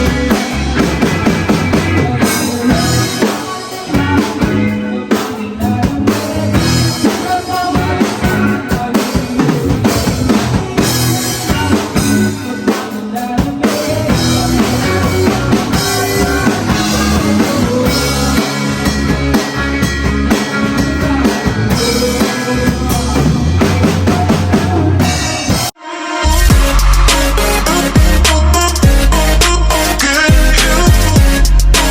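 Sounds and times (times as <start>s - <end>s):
drum kit hits: 0.0s - 4.7s, 6.6s - 12.4s, 26.3s - 31.9s
band playing: 0.0s - 31.9s.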